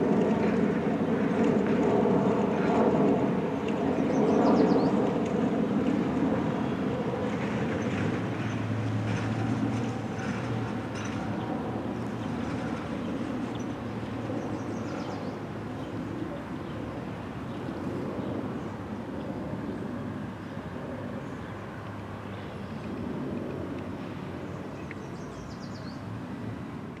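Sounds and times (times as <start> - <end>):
passing vehicles rumble and hiss: 0.0 - 27.0.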